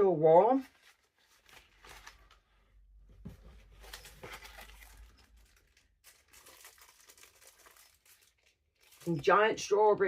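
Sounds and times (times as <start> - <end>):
packaging crinkling and rustling: 0.6 - 2.4, 3.5 - 9.3.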